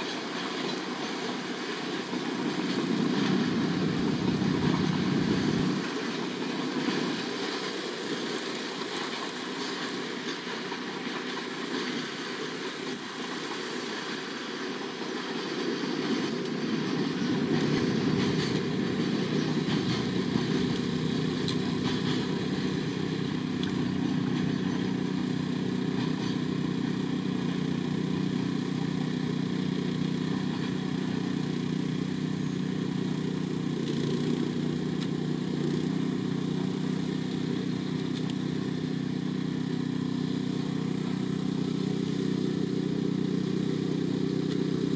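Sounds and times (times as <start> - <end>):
freight train rumbling past: 16.0 - 25.3.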